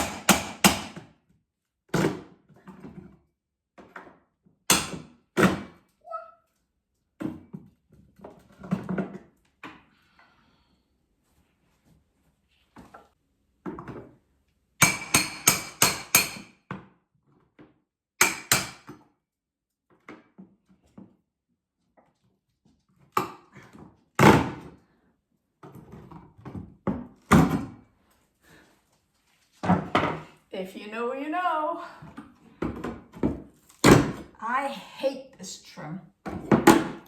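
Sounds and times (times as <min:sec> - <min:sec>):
hammer-like knocks on hard surface: 0:00.0 - 0:01.1.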